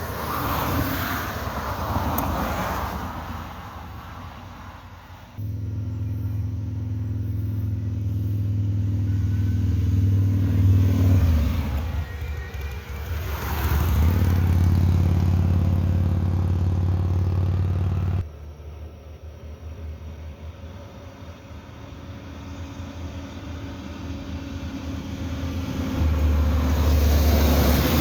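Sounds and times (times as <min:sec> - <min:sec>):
vehicle passing: 0:00.0 - 0:18.3, 0:25.6 - 0:28.0
engine humming: 0:04.9 - 0:20.6.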